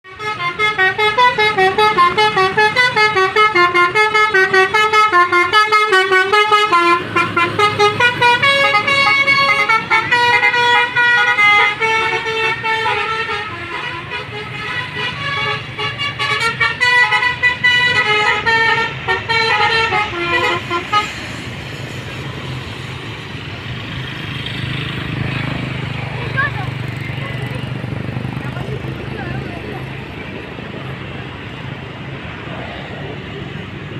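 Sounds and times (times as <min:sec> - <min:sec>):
multi-tone musical bus horn melody: 0:00.0 - 0:21.3
bus engine humming: 0:00.0 - 0:33.9.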